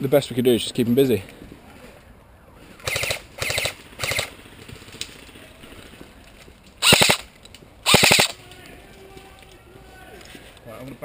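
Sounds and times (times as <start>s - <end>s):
airsoft rifle full-auto bursts: 2.8s - 4.3s, 6.8s - 8.4s.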